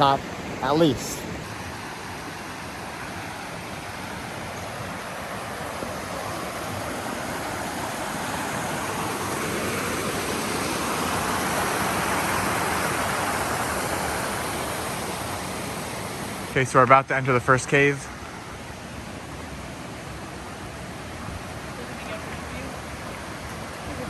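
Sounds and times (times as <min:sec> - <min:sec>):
mountain creek rushing: 0:00.0 - 0:24.0.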